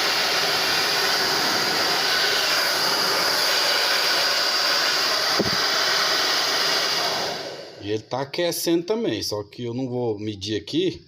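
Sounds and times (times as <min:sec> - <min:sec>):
hair dryer running: 0:00.0 - 0:07.8.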